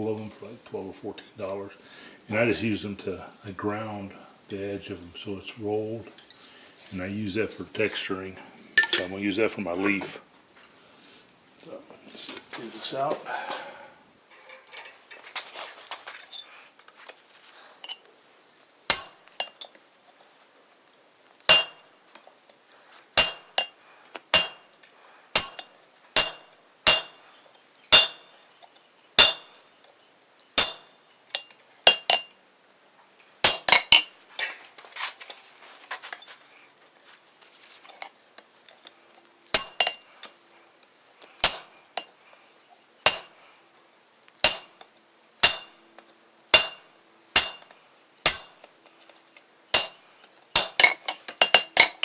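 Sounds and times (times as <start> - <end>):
hammer striking steel on anvil: 8.8 - 9.1, 18.9 - 19.6, 21.5 - 21.9, 23.2 - 23.7, 24.4 - 24.8, 25.4 - 27.3, 27.9 - 28.4, 29.2 - 29.6, 30.6 - 32.3, 33.4 - 34.1, 39.6 - 40.1, 41.4 - 42.1, 43.1 - 43.5, 44.4 - 45.9, 46.6 - 48.7, 49.8 - 52.0.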